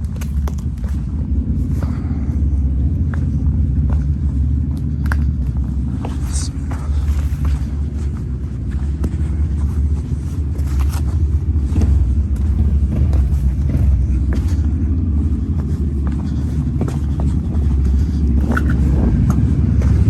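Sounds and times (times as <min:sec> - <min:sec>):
atv engine rumbling: 0:00.0 - 0:20.0
knocks and rattles: 0:09.0 - 0:20.0.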